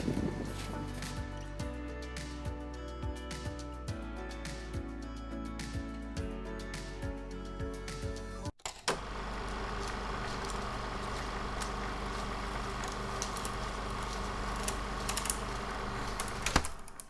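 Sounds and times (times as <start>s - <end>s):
steady background hum: 8.9s - 17.0s.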